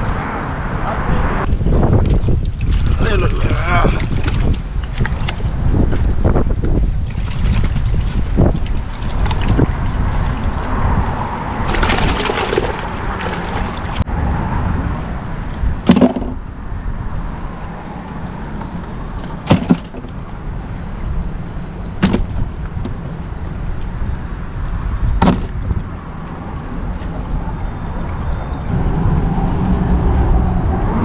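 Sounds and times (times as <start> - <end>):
passing traffic: 0.0 - 2.0, 8.8 - 31.0
wind: 0.0 - 31.0
sharp knocks: 19.4 - 20.1, 22.0 - 22.4, 25.2 - 25.6.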